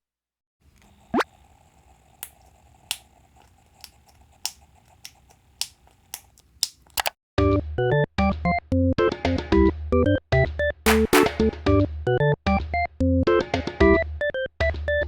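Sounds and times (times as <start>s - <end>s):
blister pack pops: 2.1s - 7.1s, 10.9s - 11.5s
music: 7.4s - 15.0s.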